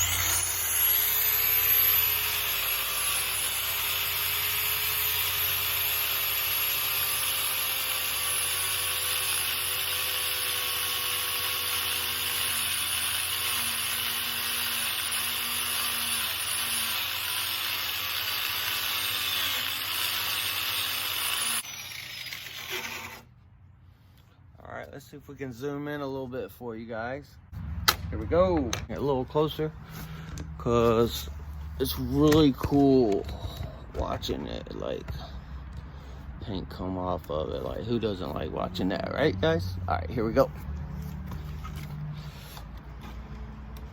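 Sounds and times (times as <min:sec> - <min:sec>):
angle grinder grinding metal: 0:00.0 - 0:23.4.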